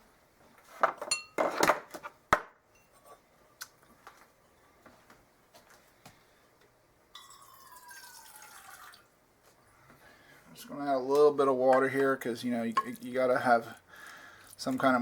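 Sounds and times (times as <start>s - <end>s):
water running: 7.2s - 9.1s.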